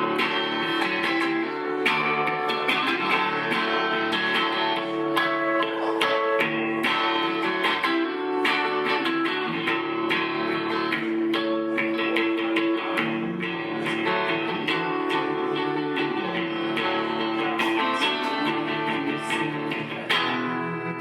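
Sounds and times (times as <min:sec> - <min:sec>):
guitar strumming chords: 0:00.0 - 0:21.0.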